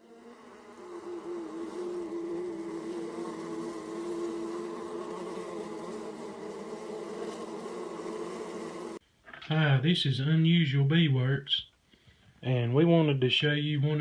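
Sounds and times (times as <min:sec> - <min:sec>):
honey bees buzzing: 0:00.0 - 0:09.0.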